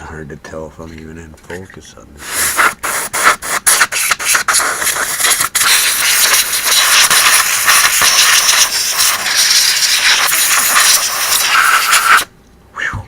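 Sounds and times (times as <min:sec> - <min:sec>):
compressed air duster hissing: 0:02.2 - 0:12.3.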